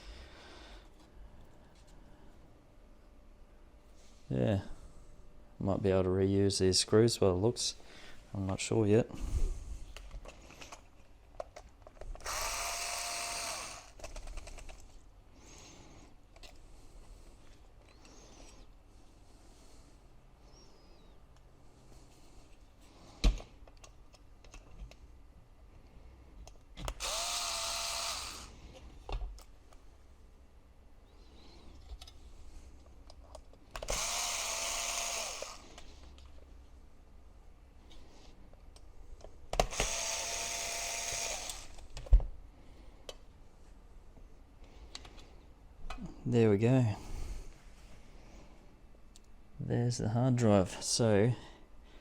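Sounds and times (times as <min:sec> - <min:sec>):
screws and metal parts clicking: 0:10.0 - 0:15.0
electric screwdriver whine: 0:12.2 - 0:14.5, 0:26.9 - 0:28.5, 0:33.8 - 0:35.8, 0:39.6 - 0:41.8.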